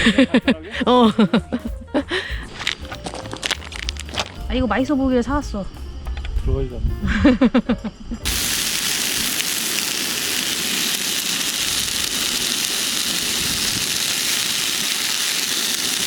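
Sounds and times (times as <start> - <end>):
sausages sizzling: 2.0 - 5.0, 8.2 - 16.0.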